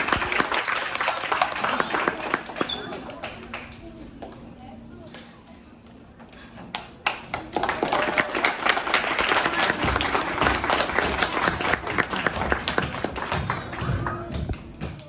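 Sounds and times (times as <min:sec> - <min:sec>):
audience applauding: 0:00.0 - 0:03.8, 0:07.0 - 0:14.7.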